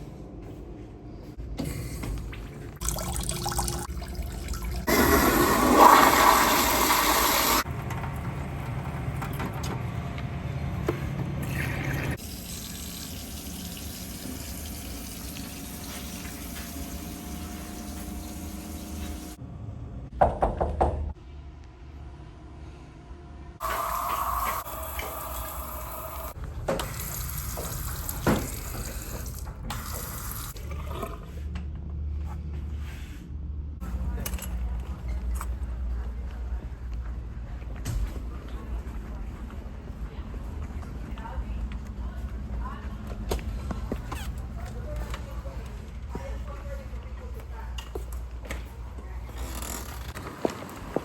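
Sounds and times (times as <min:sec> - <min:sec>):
tank refilling with water: 0:01.6 - 0:08.8, 0:11.4 - 0:19.4, 0:23.6 - 0:31.4
toilet flushing: 0:01.6 - 0:09.4, 0:11.4 - 0:19.4, 0:23.6 - 0:31.4.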